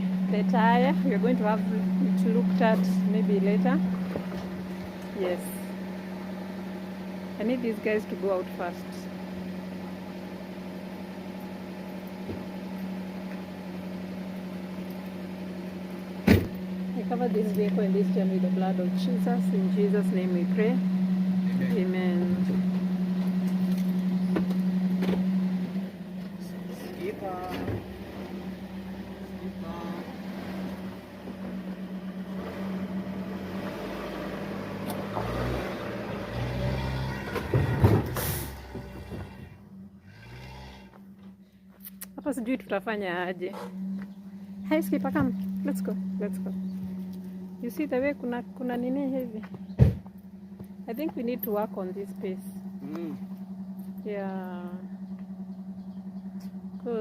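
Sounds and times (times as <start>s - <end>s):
deep rumble: 0.0s - 6.6s
car engine idling: 0.0s - 57.0s.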